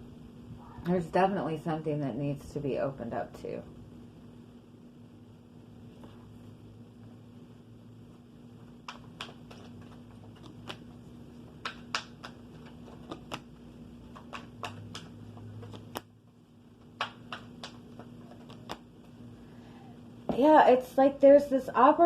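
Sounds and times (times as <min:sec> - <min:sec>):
faint steady hum: 0:00.0 - 0:22.0
cards clicking and tapping on table: 0:08.8 - 0:16.1, 0:16.8 - 0:18.9.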